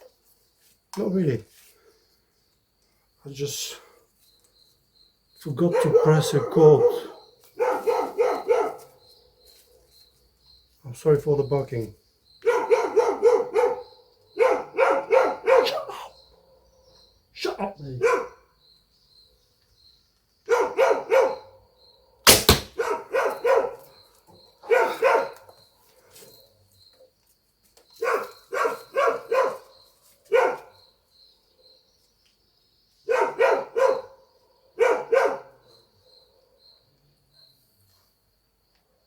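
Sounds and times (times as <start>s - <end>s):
dogs barking: 5.6s - 9.9s, 12.4s - 17.0s, 17.9s - 18.6s, 20.5s - 21.6s, 22.6s - 24.0s, 24.6s - 25.6s, 28.0s - 30.8s, 33.0s - 36.6s
sharp crack: 22.3s - 22.9s.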